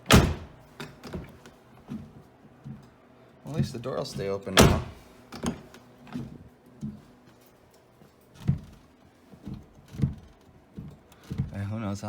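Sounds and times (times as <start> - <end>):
soft thumps and knocks: 8.4 - 11.6.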